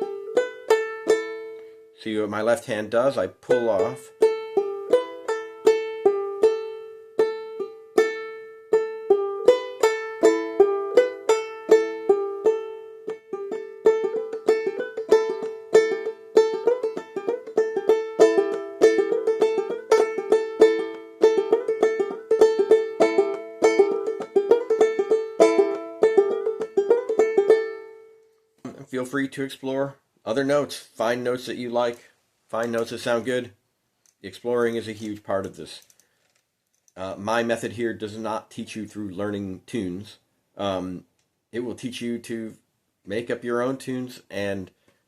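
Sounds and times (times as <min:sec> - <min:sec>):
ukulele plucked notes: 0:00.0 - 0:01.6, 0:03.5 - 0:28.2.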